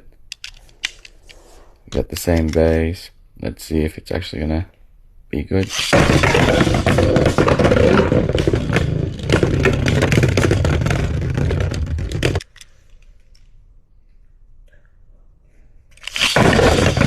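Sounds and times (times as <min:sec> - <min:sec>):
spinning tops whirring and clattering: 0:05.7 - 0:12.5, 0:16.0 - 0:17.0.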